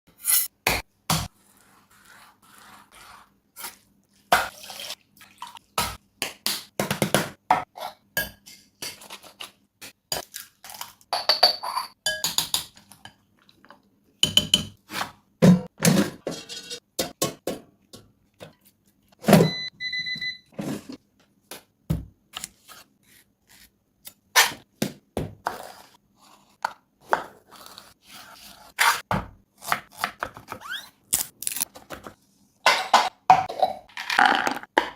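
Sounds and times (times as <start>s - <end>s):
utensils clinking against bowls: 16.2s - 16.8s
high ringing tone: 19.4s - 20.5s.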